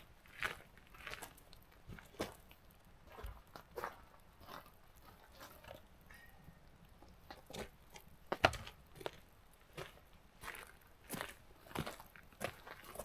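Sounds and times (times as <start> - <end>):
kindling crackling and snapping: 0.0 - 10.2.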